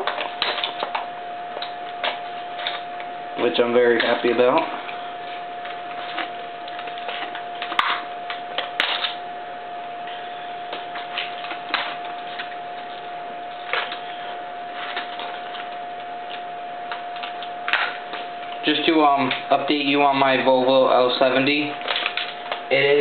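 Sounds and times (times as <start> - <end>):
steady high-pitched whine: 0.0 - 23.0
hands handling packaging: 3.9 - 9.3, 10.0 - 19.9, 21.5 - 23.0.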